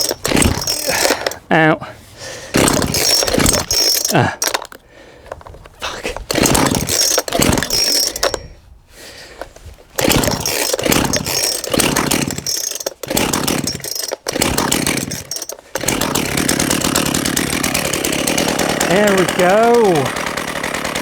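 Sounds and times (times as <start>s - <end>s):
chainsaw engine pull-starting: 0.0s - 1.5s, 2.4s - 5.6s, 6.2s - 8.6s, 9.4s - 21.0s.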